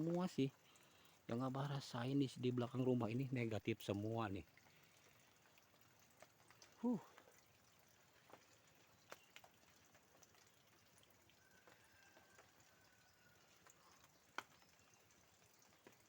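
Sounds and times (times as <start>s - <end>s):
soft clicks and crackles: 4.6s - 16.0s.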